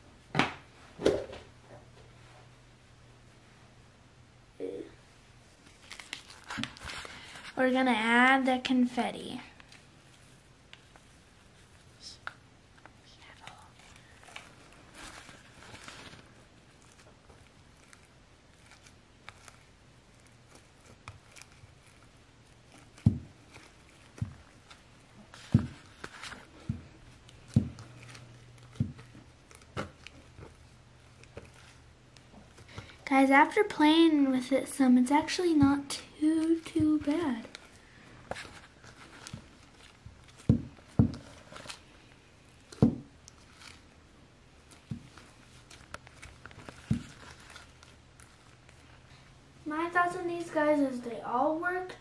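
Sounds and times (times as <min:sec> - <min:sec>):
hands mixing slime: 0:05.4 - 0:52.0.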